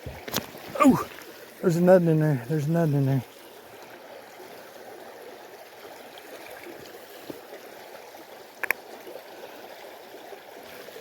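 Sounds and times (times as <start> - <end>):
stream running: 0.0 - 11.0.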